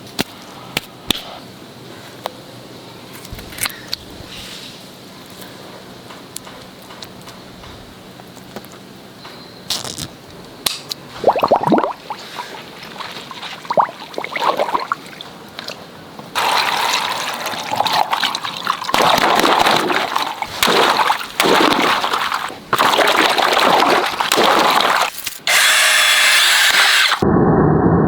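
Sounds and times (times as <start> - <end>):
water rushing into toy: 16.4 - 27.2.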